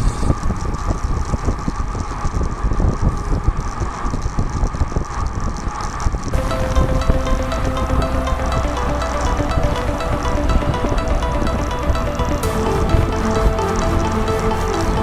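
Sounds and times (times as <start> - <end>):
bicycle road rumble: 0.0 - 6.4
music tones: 6.3 - 15.0.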